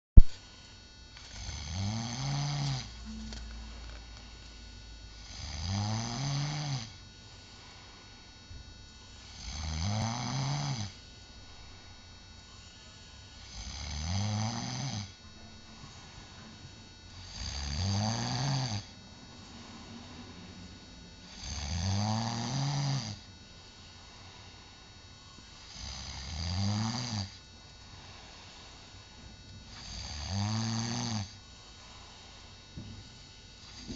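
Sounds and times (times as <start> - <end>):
quiet breathing: 0.3 - 33.9
loud snores: 1.3 - 3.0, 5.2 - 7.0, 9.3 - 11.0, 13.4 - 15.2, 17.2 - 20.4, 21.3 - 23.3, 25.6 - 27.4, 29.7 - 31.4.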